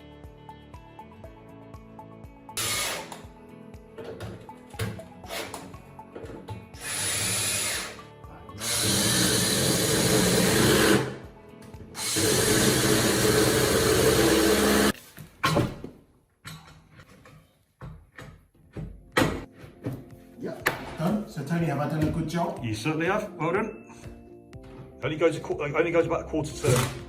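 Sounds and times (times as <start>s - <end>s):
background music: 0.0s - 15.6s, 17.8s - 27.0s
power drill running: 2.6s - 3.1s, 6.8s - 8.0s, 8.6s - 11.2s, 12.0s - 15.0s.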